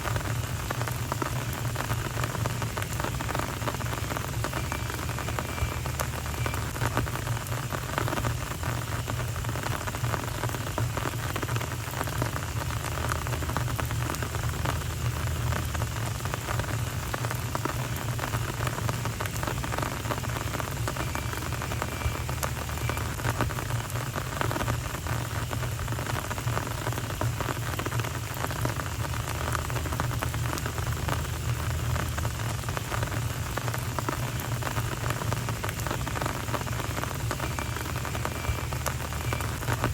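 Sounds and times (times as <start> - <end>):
rain on a street: 0.0 - 39.9.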